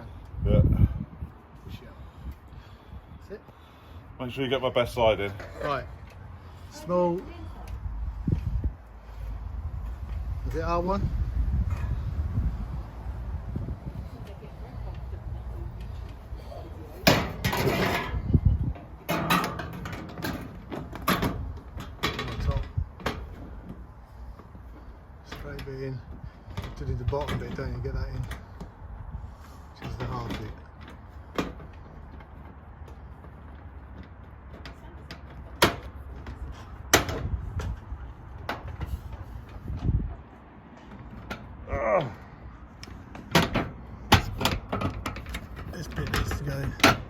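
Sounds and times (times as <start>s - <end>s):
knocks and clatters: 17.0s - 25.4s, 43.0s - 47.0s.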